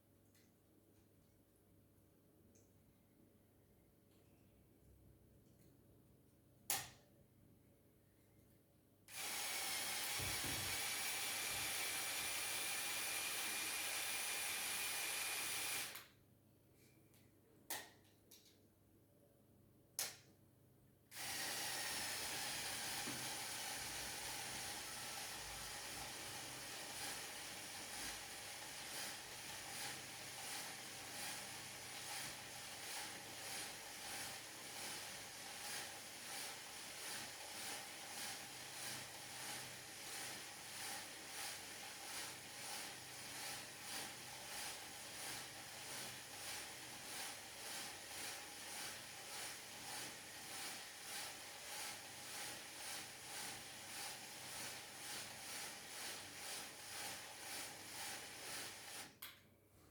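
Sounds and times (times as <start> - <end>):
small motor whirring gears: 9.1 - 16.0, 21.1 - 59.2.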